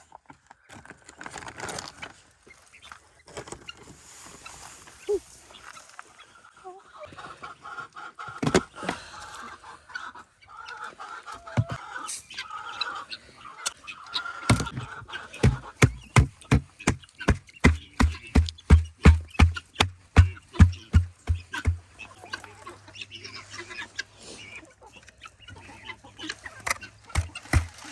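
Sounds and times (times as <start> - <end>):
chickens clucking: 2.5 - 27.9
footsteps crunching through snow: 14.7 - 21.8.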